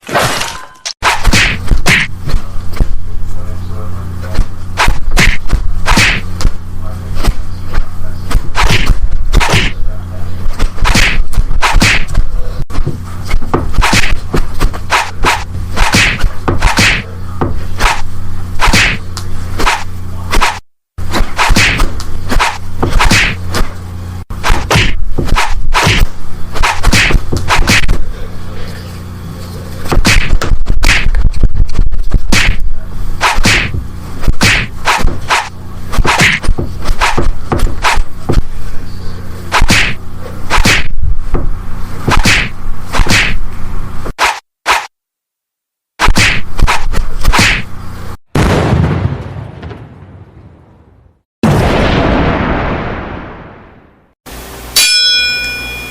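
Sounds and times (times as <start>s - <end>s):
swishes and sharp whacks: 1.0s - 2.4s, 4.8s - 6.5s, 8.3s - 9.8s, 10.6s - 12.2s, 13.7s - 17.0s, 17.8s - 19.0s, 19.6s - 23.7s, 24.4s - 28.0s, 29.9s - 31.3s, 32.3s - 32.6s, 33.2s - 38.1s, 39.5s - 40.9s, 42.1s - 43.4s, 44.2s - 44.9s, 46.0s - 47.7s
steady low hum: 1.0s - 44.2s.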